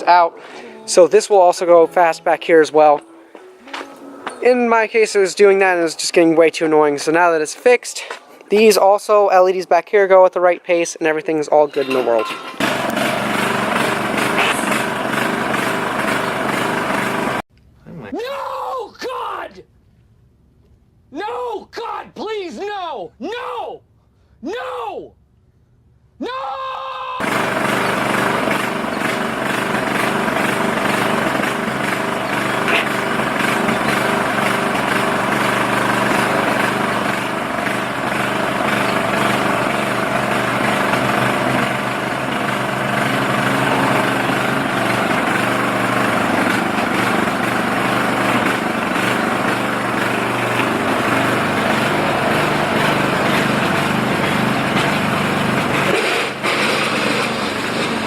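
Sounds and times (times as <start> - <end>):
tractor engine running: 11.9 - 17.4, 27.2 - 58.0.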